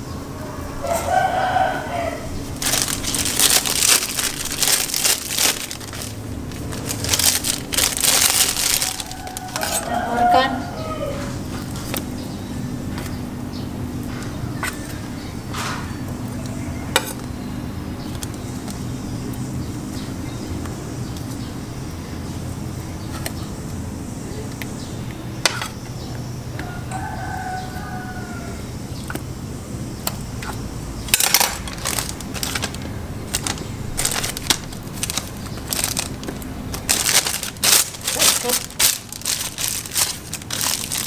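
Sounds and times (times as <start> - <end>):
rooster crowing: 0.0 - 4.2, 8.0 - 12.8, 14.1 - 17.2, 26.4 - 29.0
clicks and crinkles of handling: 2.5 - 10.1, 11.2 - 12.2, 23.0 - 23.5, 30.0 - 41.0.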